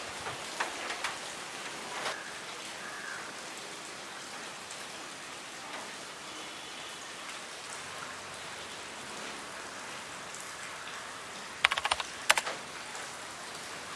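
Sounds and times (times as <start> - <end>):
rain falling: 0.0 - 13.9
sharp taps: 11.7 - 12.4.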